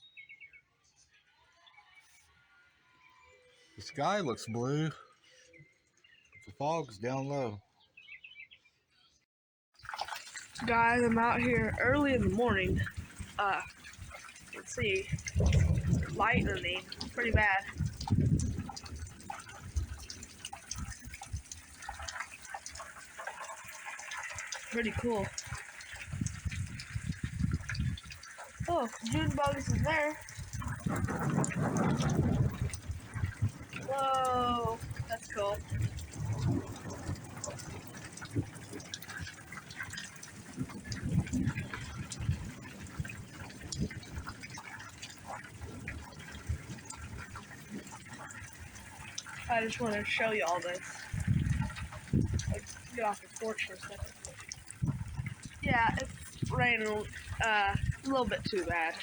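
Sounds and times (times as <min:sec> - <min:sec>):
light rain pattering: 0:09.8 - 0:59.0
water dripping and splashing: 0:09.8 - 0:59.0
dull low thumps: 0:14.8 - 0:20.1, 0:26.0 - 0:38.8.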